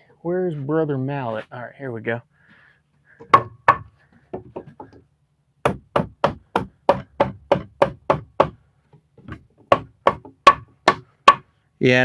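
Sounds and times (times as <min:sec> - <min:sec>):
mallet knocking on wood board: 0:03.2 - 0:05.0, 0:05.7 - 0:08.6, 0:09.2 - 0:11.5.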